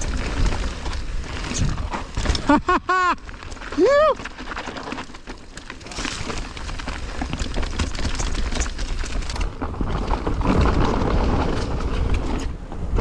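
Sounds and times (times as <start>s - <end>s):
bike rattling: 0.0s - 13.0s
bike tires rumbling over dirt: 0.0s - 13.0s
wind buffeting microphone: 6.0s - 13.0s.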